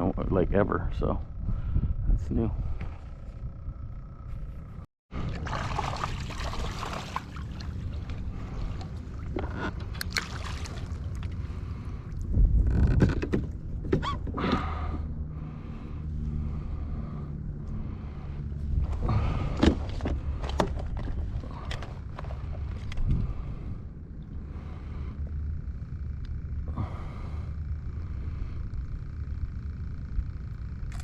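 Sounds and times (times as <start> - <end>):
wind rumbling on microphone: 0.0 - 4.8, 5.9 - 15.0, 17.4 - 27.0
water sloshing and splashing: 5.1 - 12.2.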